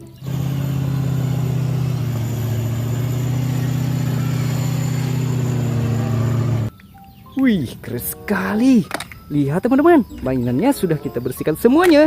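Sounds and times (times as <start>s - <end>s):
motor hum: 0.0s - 6.7s.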